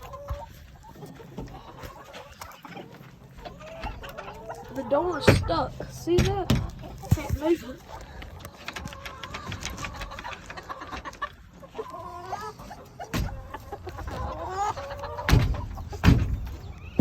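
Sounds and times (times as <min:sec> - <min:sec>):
chickens clucking: 0:00.0 - 0:17.0
heavy thumps of door kicked: 0:15.3 - 0:16.4.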